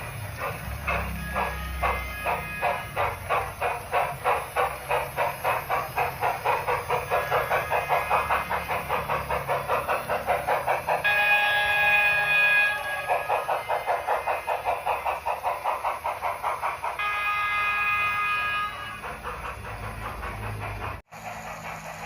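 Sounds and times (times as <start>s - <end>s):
steam locomotive chuffing: 0.0s - 22.0s
steam whistle blowing: 0.9s - 3.0s, 11.0s - 14.3s, 17.0s - 19.2s.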